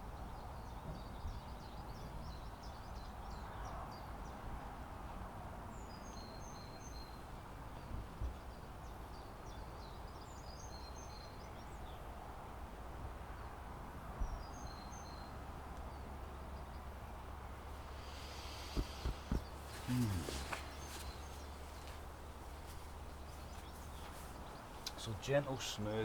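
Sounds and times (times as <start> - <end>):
wind rumble on microphone: 11.4 - 19.7
birds calling: 15.9 - 26.0
sea washing: 17.8 - 21.2
microphone bumps: 17.8 - 21.4.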